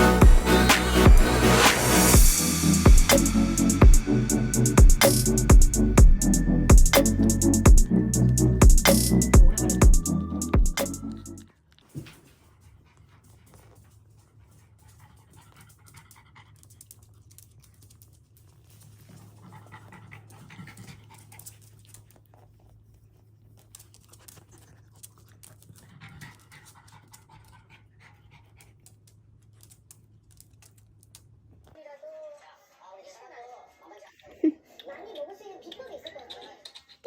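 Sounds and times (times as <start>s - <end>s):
puppy panting: 19.0s - 29.0s.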